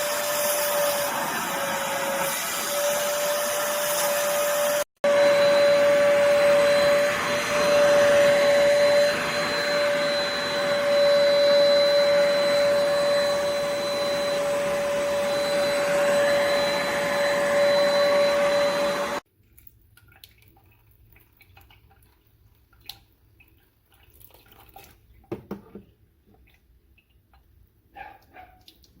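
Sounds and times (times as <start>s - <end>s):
suction motor whining: 0.0s - 19.2s.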